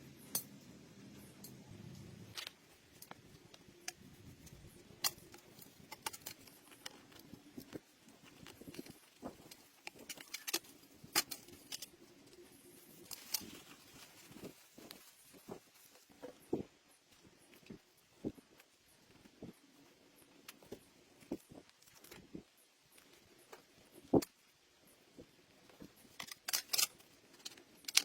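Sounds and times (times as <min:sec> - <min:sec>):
small tools clicking on hard surface: 0:25.8 - 0:28.0.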